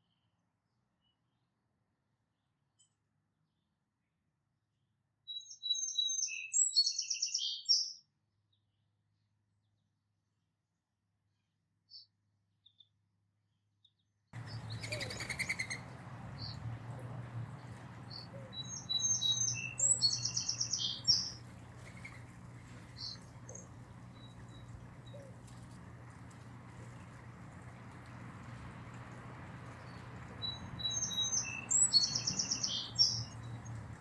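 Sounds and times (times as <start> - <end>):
low hum: 14.4 - 34.0
rapid rattling bird call: 14.4 - 34.0
songbirds chirping: 14.4 - 34.0.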